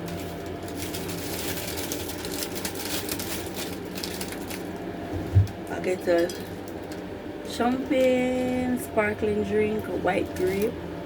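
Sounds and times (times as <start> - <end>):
packaging rustling and crackling: 0.0 - 7.1
low background hum: 0.0 - 11.0.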